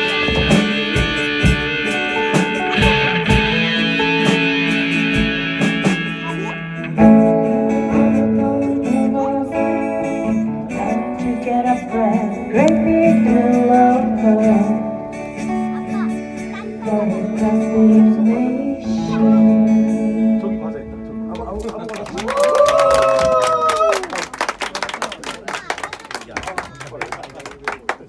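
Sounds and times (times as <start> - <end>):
drum hits: 0.0 - 6.4
electric guitar: 0.0 - 24.1.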